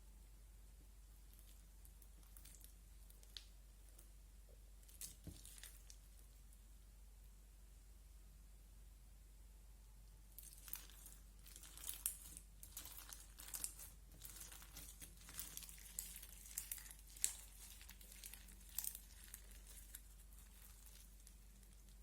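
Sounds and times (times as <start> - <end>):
crunchy slime crackling: 1.3 - 3.6, 4.8 - 6.5, 10.3 - 22.0.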